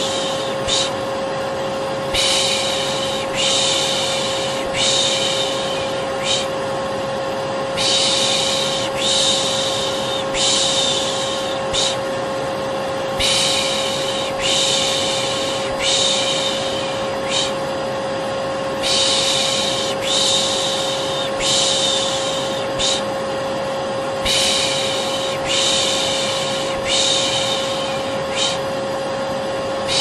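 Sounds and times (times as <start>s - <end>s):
person shushing: 0.0s - 1.0s, 2.1s - 6.6s, 7.8s - 12.1s, 13.2s - 17.7s, 18.8s - 23.2s, 24.2s - 28.8s
vacuum cleaner running: 0.0s - 30.0s.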